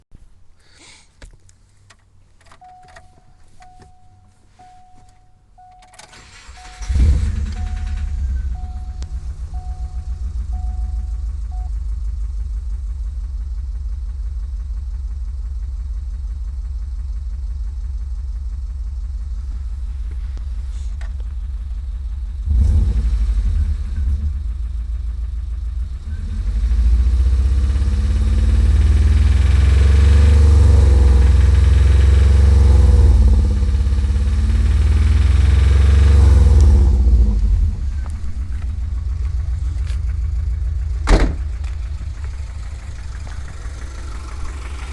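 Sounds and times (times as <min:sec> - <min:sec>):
car engine idling and revving: 0:01.7 - 0:44.9.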